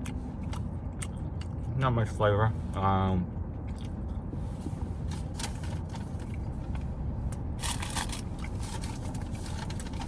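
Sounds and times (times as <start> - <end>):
crunchy chewing: 0.0 - 1.8
steady low rumble: 0.0 - 10.0.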